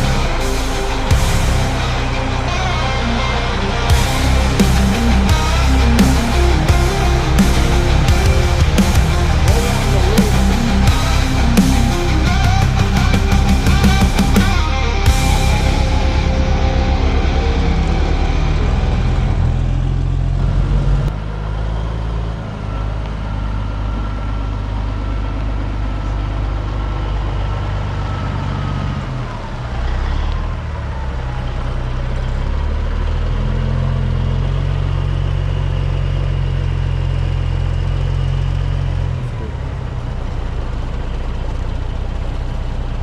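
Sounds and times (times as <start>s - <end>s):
diesel truck engine running: 0.0s - 43.0s.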